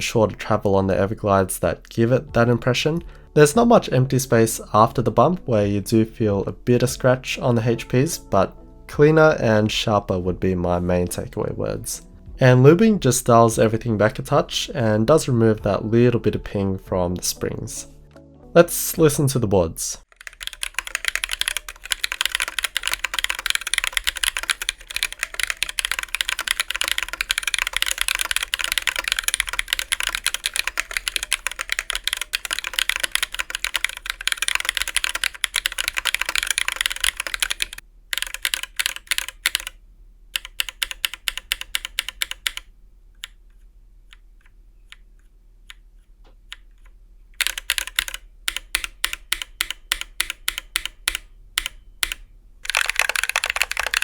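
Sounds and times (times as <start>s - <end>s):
typing on mechanical keyboard: 20.1s - 39.8s, 40.4s - 43.4s, 47.4s - 54.0s.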